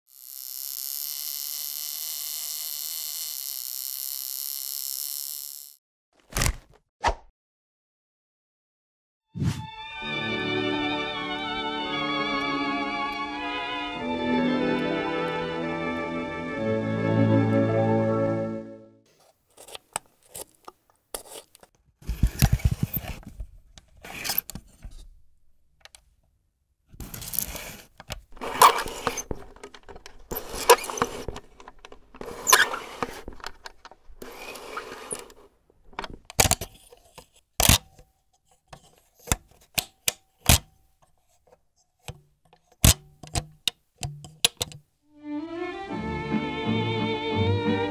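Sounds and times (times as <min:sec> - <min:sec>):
rustling and scraping: 0:19.1 - 0:25.2, 0:27.0 - 0:39.8
camera mechanism clicks: 0:37.6 - 0:37.9.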